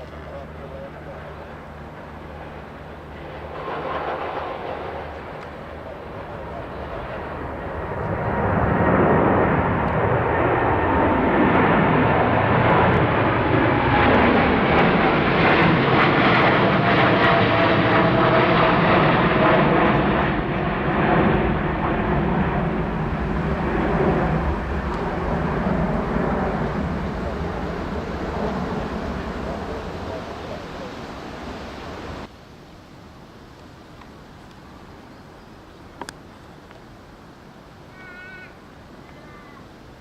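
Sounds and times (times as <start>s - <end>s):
jet engines passing: 0.0s - 32.5s.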